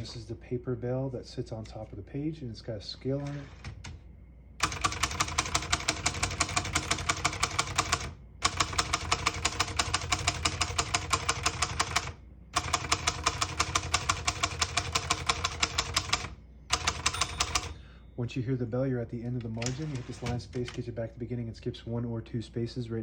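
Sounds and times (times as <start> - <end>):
typewriter keys clacking: 4.6 - 17.8, 19.5 - 20.8.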